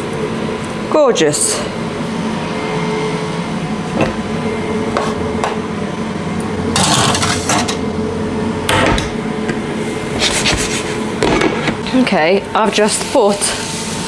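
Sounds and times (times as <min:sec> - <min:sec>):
steady background hum: 0:00.0 - 0:14.0
rattling and scraping: 0:06.8 - 0:07.9.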